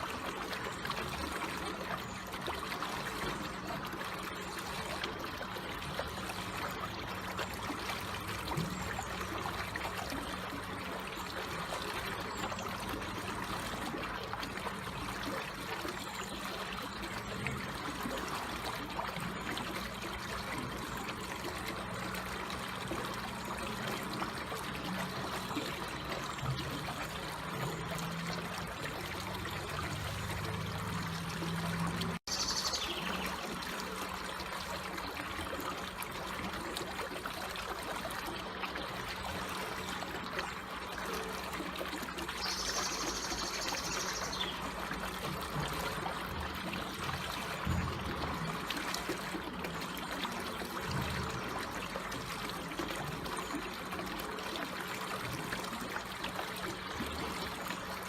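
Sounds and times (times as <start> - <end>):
water trickling: 0.0 - 58.0.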